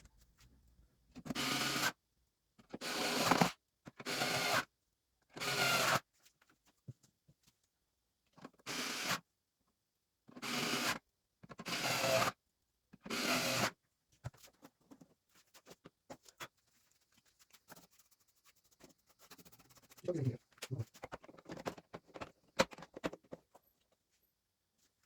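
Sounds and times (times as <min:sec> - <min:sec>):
scrubbing keyboard parts: 0:17.2 - 0:23.6.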